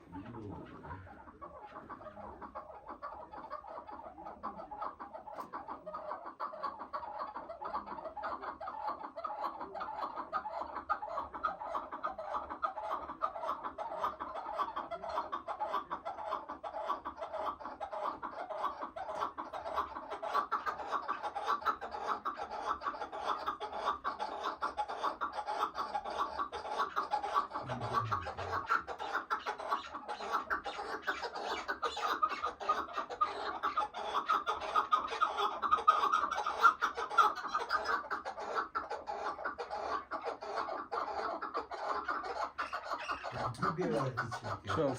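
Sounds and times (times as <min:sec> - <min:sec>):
partridge calling chuck notes: 0:42.8 - 0:44.9.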